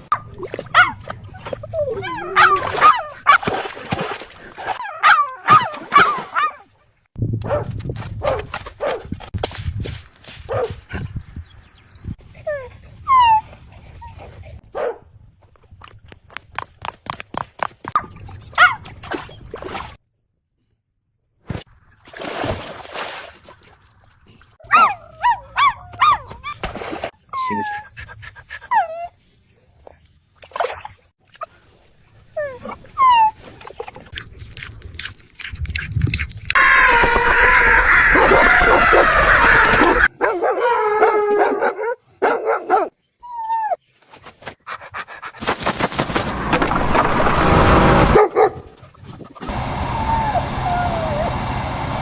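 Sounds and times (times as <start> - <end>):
dog barking and yelping: 0.1 - 3.4, 4.8 - 6.6, 24.6 - 26.6, 36.6 - 43.8, 48.1 - 48.7
dog whining: 27.3 - 29.6, 49.8 - 51.4.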